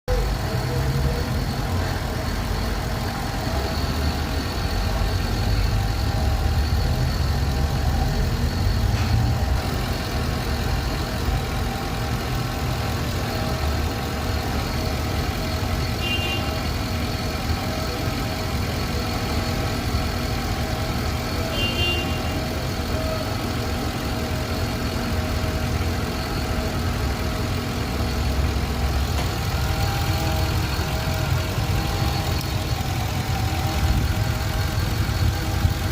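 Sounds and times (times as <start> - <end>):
car engine idling: 0.1 - 35.9.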